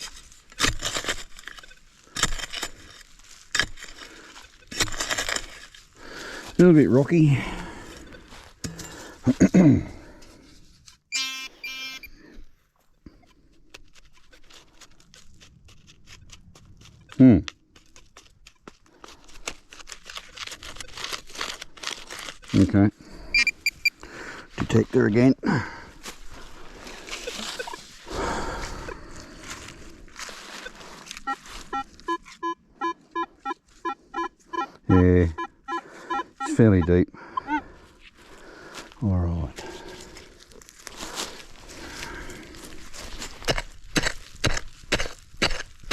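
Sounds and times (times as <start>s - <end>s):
digging in rocky soil: 0.0s - 45.9s
metal detector beeps: 11.1s - 12.2s, 23.3s - 24.0s, 27.2s - 27.8s, 30.5s - 37.6s
scuffing and scraping: 25.9s - 32.6s.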